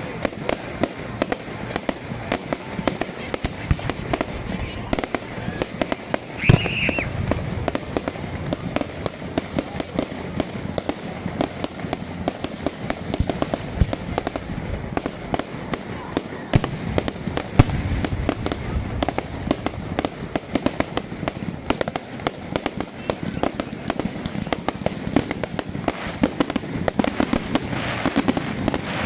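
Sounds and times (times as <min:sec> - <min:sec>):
bonfire crackling and popping: 0:00.0 - 0:29.0
loud cracks of burning wood: 0:05.7 - 0:08.7.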